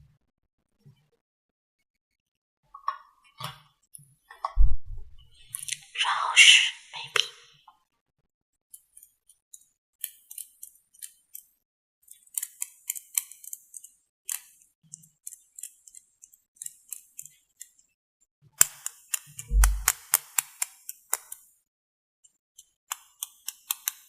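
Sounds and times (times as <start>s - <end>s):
pencil clicks taps and scratches: 8.7s - 18.0s, 18.6s - 21.5s, 22.2s - 24.0s.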